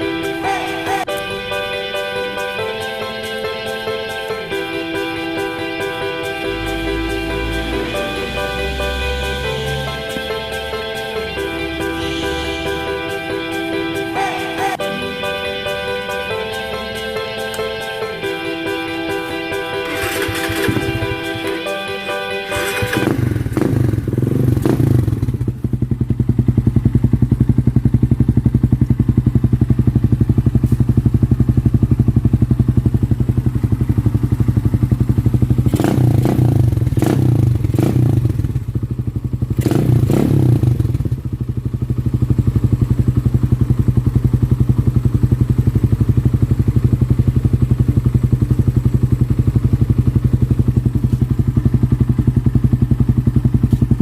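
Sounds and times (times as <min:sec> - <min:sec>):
motorcycle engine idling: 0:19.8 - 0:21.6, 0:22.6 - 0:54.0.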